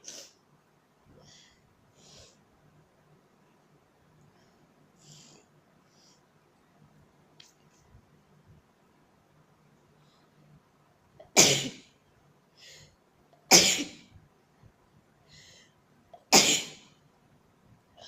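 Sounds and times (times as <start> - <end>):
person sneezing: 16.3 - 16.8.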